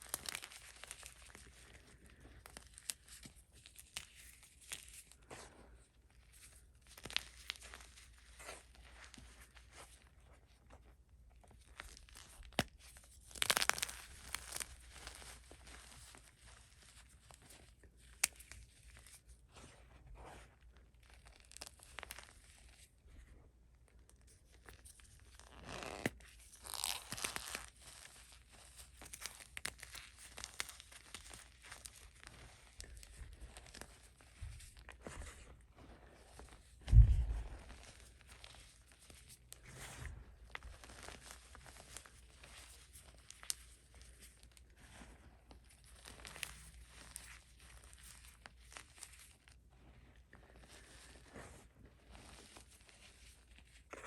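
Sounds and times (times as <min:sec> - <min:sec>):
low thump: 0:36.8 - 0:37.7.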